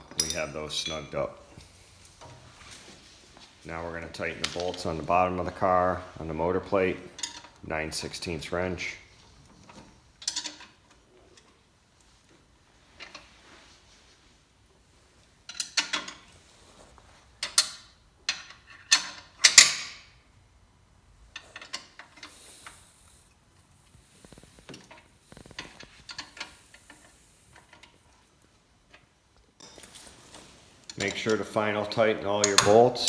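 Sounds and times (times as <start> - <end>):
wrench clicking and clanking: 32.4 - 33.0.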